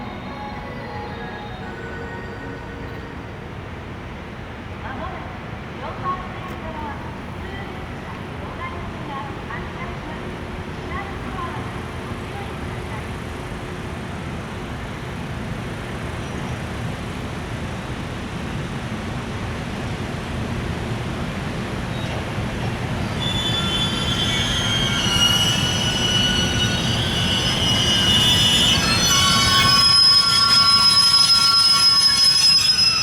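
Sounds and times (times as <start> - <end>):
freight train rumbling on rails: 0.0 - 33.0
high-pitched wheel squeal: 21.9 - 33.0.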